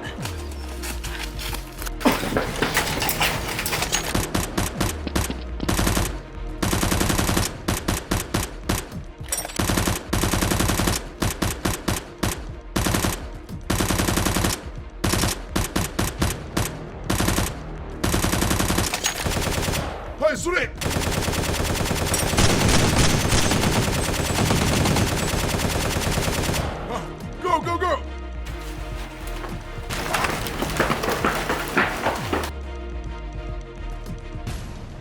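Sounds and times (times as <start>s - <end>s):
automatic gunfire: 9.6s - 19.9s, 20.8s - 26.7s.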